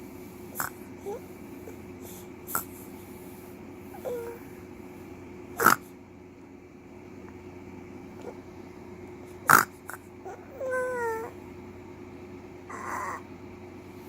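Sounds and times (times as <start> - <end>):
baby whimpering: 0.6 - 1.8, 4.0 - 4.6, 9.9 - 11.4, 12.7 - 13.3.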